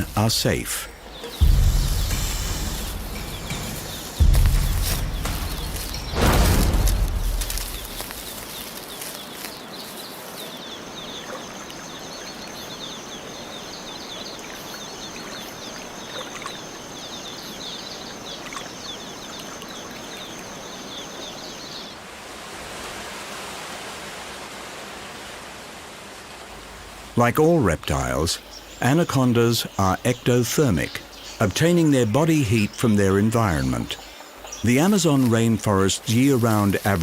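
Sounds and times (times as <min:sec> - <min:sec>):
high insect drone: 0:00.0 - 0:21.6
running water: 0:00.0 - 0:37.0.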